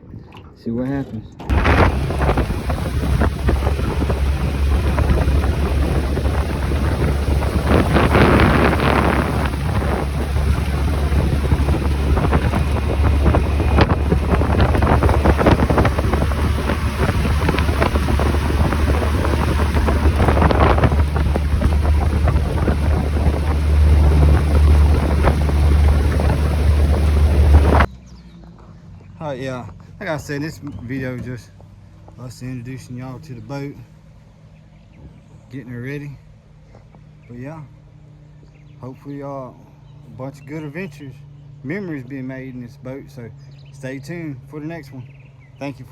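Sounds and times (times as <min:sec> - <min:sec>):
outboard motor running: 0:01.5 - 0:27.9
wind on microphone: 0:01.5 - 0:27.9.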